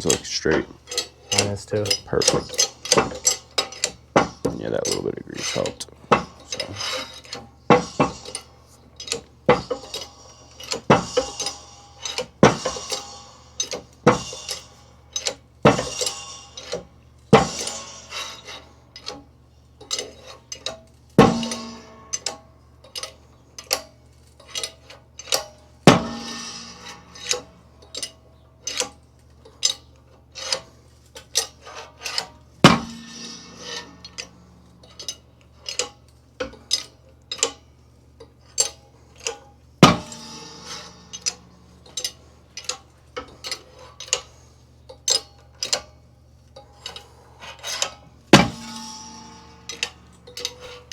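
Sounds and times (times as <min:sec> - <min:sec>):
metallic clicks and knocks: 0:00.0 - 0:14.6, 0:19.8 - 0:45.9, 0:46.5 - 0:50.9
loud ringing metal knocks: 0:21.2 - 0:22.5, 0:25.9 - 0:28.0, 0:32.6 - 0:35.1, 0:39.8 - 0:42.7, 0:48.3 - 0:50.9.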